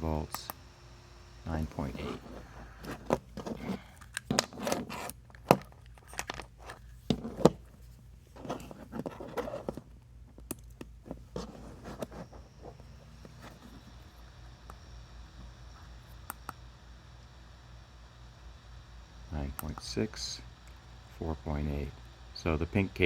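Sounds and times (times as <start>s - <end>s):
cables rustling and scraping: 1.5s - 14.8s.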